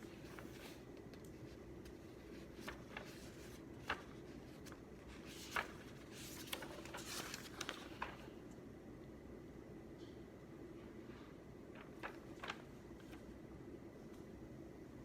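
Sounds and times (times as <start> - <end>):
pages rustling: 0.0 - 8.4, 11.7 - 13.3
low room hum: 0.0 - 15.0.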